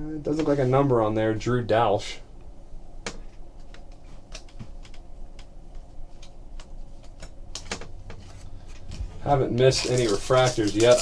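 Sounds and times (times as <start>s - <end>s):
cards clicking and snapping: 9.8s - 11.0s.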